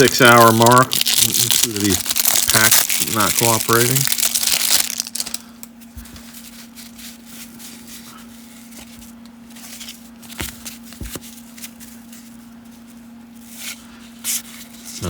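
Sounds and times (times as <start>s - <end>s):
cards rustling and flipping: 0.0s - 5.4s, 8.6s - 12.4s.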